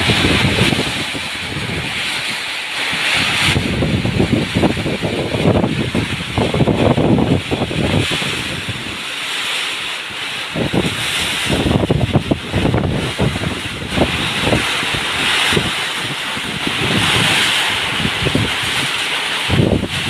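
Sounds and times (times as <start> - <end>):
rushing wind and sea: 0.0 - 20.0
wind buffeting microphone: 0.0 - 20.0.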